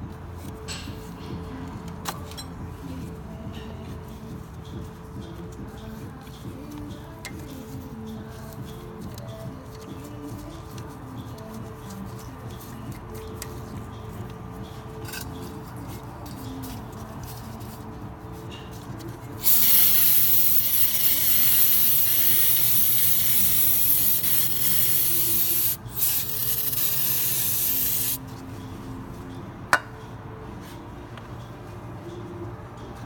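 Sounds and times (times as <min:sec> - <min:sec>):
pressurised spray hissing: 0:19.4 - 0:28.2.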